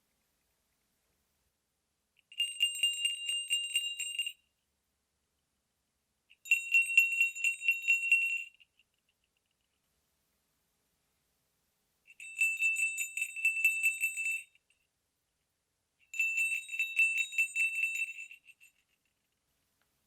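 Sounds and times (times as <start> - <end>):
sleigh bells jingling: 2.2 - 4.4, 6.4 - 9.7, 12.1 - 14.9, 16.1 - 19.4.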